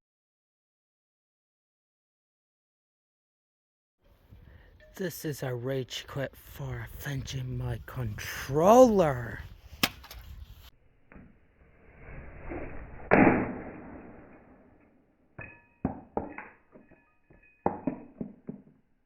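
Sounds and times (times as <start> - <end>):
rising rush: 11.6 - 14.6
sharp knocks and clatters: 15.4 - 18.9.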